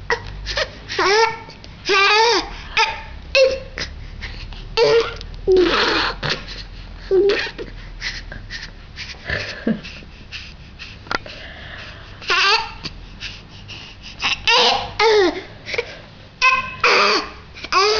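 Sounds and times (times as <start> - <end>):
baby babbling and laughing: 1.0 - 3.9, 4.8 - 6.4, 7.1 - 7.7, 12.2 - 12.8, 14.2 - 15.5, 16.4 - 17.9
baby hiccups: 16.4 - 17.3.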